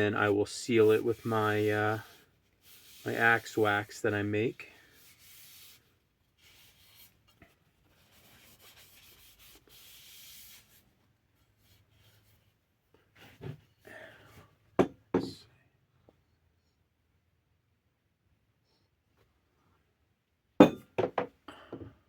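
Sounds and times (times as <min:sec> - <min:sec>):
rag swishing on wood: 0:00.0 - 0:04.1.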